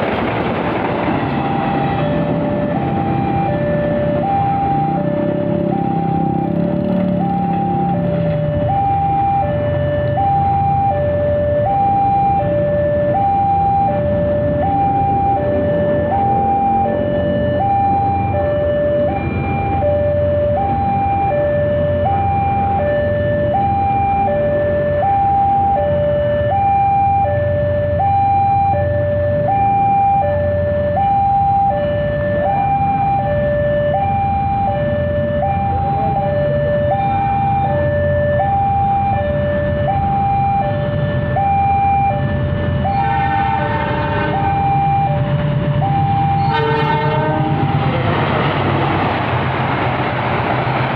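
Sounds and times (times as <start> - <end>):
level crossing two-tone alarm: 1.3 - 47.9
train horn: 42.9 - 44.5, 46.4 - 48.6.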